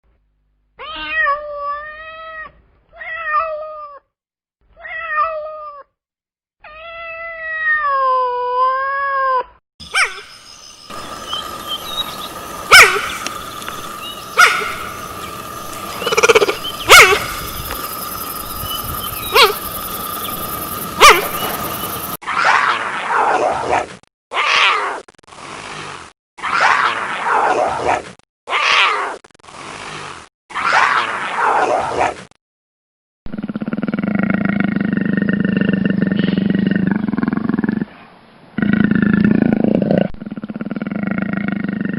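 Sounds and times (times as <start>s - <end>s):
cat meowing: 0.8s - 4.1s
steady high hum: 10.8s - 22.2s.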